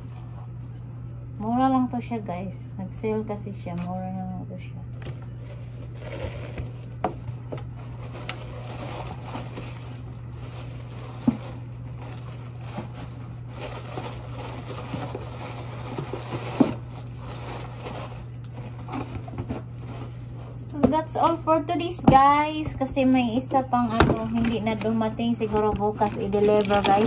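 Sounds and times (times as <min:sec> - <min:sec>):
steady low hum: 0:00.0 - 0:27.0
rustling and scraping of packaging: 0:05.0 - 0:21.4, 0:25.4 - 0:27.0.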